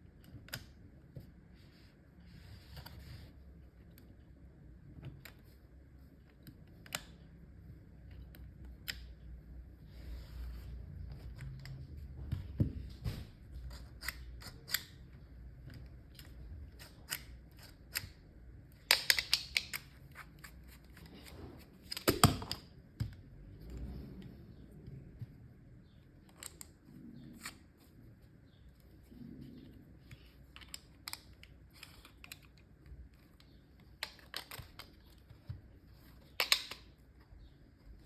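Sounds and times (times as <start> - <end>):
plastic parts clicking and snapping: 6.2 - 7.4, 8.0 - 9.3, 13.8 - 23.8, 30.0 - 37.2.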